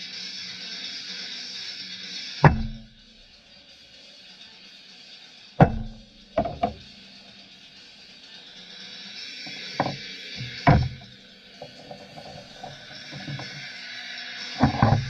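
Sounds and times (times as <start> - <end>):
hammer striking metal: 2.4 - 2.9, 5.6 - 6.8.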